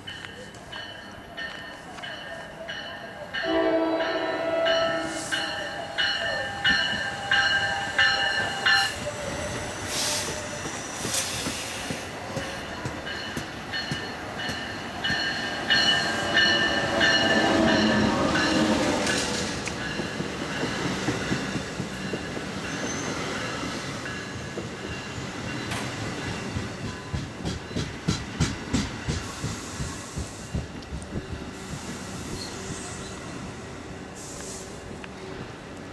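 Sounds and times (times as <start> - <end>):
train passing on rails: 0.0 - 35.9
train wheels squealing: 4.6 - 27.9, 31.6 - 33.4.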